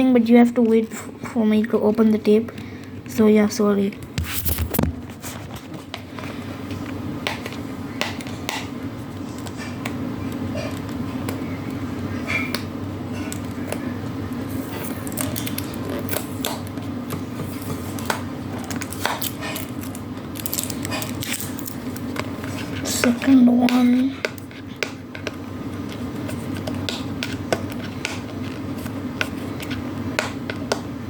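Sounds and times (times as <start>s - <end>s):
steady low hum: 0.0s - 31.0s
fingernails scratching tape: 14.5s - 16.8s.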